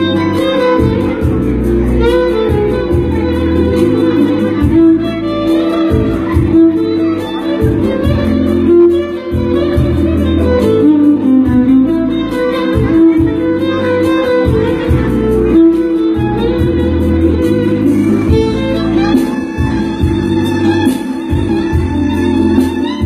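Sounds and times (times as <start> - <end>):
backing track with bass and drums: 0.0 - 23.0
violin melody: 0.0 - 23.0.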